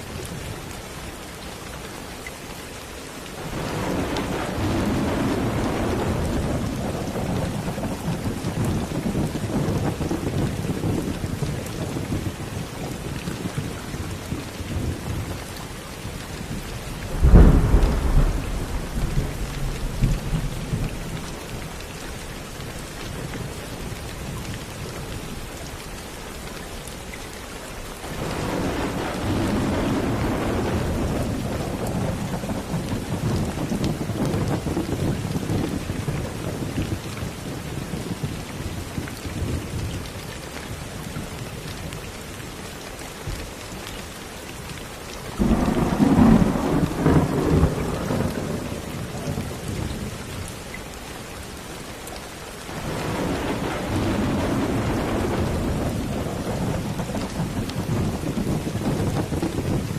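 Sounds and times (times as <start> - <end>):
steady rain: 0.0 - 59.9
rolling thunder: 3.4 - 15.5, 16.5 - 21.8, 28.0 - 39.8, 45.4 - 50.2, 52.7 - 59.9
sharp thunderclap: 3.5 - 11.2, 17.0 - 21.2, 28.0 - 35.8, 45.4 - 49.7, 52.7 - 59.9.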